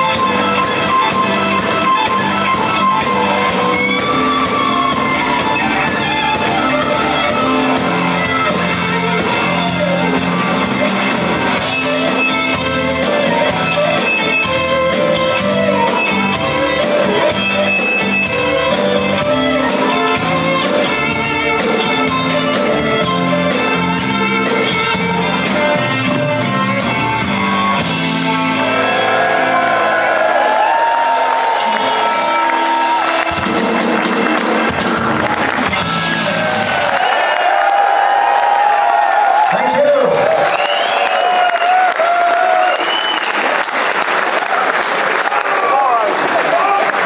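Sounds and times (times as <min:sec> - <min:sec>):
electric guitar bending notes: 0:00.0 - 0:36.9
blues-rock band playing live: 0:00.0 - 0:39.4.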